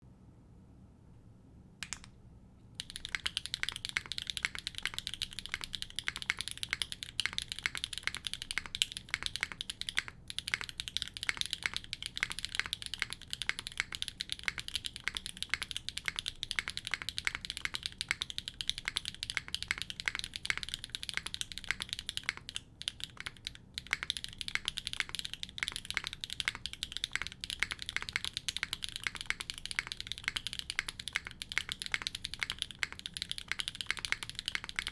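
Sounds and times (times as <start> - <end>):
mechanical keyboard typing: 2.8 - 34.9.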